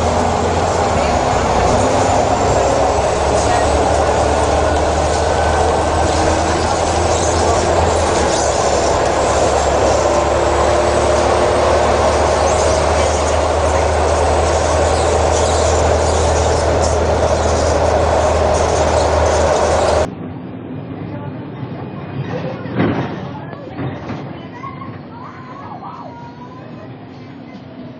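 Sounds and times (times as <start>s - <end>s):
road and body noise: 0.0s - 20.2s
bus diesel engine drone: 0.0s - 22.6s.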